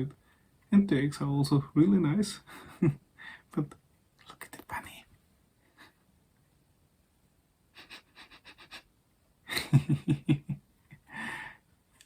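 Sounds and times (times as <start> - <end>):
man laughing softly: 2.4 - 3.4, 7.8 - 8.9, 9.5 - 11.6.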